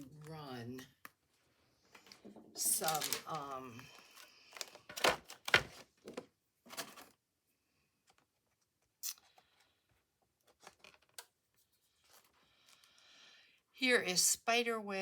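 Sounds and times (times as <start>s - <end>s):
paper rustling: 1.9s - 7.2s
craft supplies clicking: 2.0s - 6.2s.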